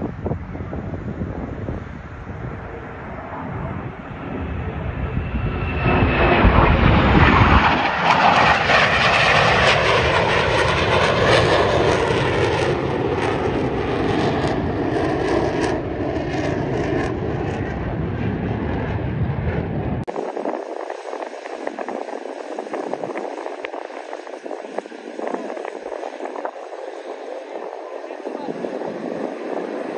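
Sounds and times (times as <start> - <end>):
airplane flying past: 0.5 - 29.9.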